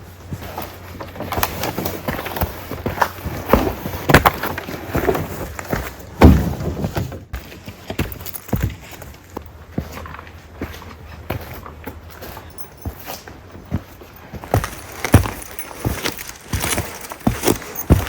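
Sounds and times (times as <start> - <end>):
heavy thud: 6.2 - 7.1
footsteps on trail: 7.4 - 18.0.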